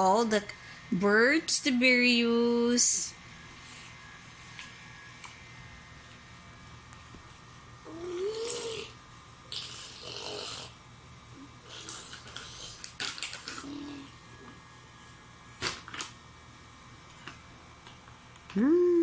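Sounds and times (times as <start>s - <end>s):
baby vocalizing: 7.9s - 9.0s.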